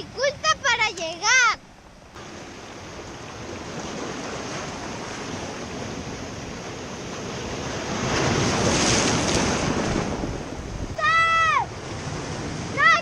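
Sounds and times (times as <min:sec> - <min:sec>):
wind on microphone: 0:02.1 - 0:11.0
surf washing onto rocky shore: 0:02.2 - 0:13.0.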